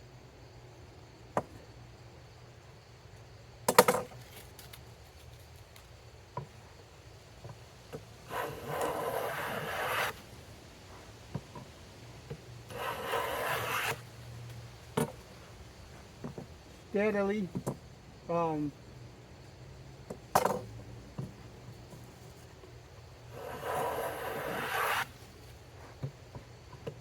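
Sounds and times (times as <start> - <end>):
hand plane shaving a board: 8.3 - 10.2, 12.7 - 14.0, 23.3 - 25.2.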